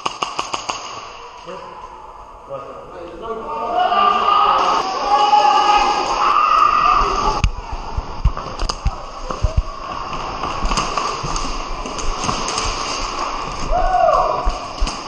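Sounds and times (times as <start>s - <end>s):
running footsteps thumping camera: 7.5s - 11.4s.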